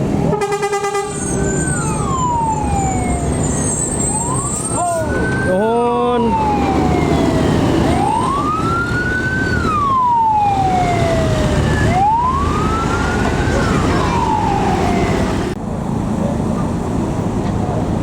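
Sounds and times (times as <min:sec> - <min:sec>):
engine and road rumble: 0:00.0 - 0:18.0
bus horn wailing: 0:00.2 - 0:01.5.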